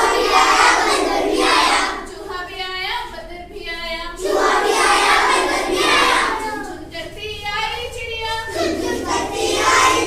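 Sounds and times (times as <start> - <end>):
children singing: 0.0 - 2.1, 4.2 - 6.9, 8.4 - 10.0.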